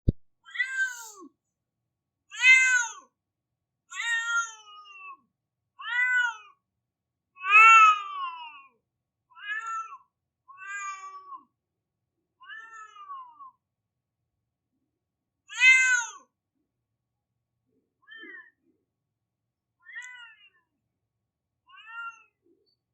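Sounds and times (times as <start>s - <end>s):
cat meowing: 0.5s - 1.2s, 5.8s - 6.5s, 9.4s - 10.0s, 10.6s - 11.4s, 12.4s - 13.5s, 15.5s - 16.2s, 18.0s - 18.5s, 19.8s - 20.6s, 21.7s - 22.4s.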